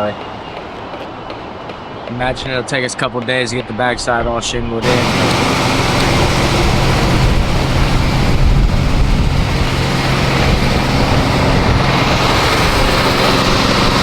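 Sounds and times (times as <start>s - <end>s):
engine running: 4.8s - 14.0s.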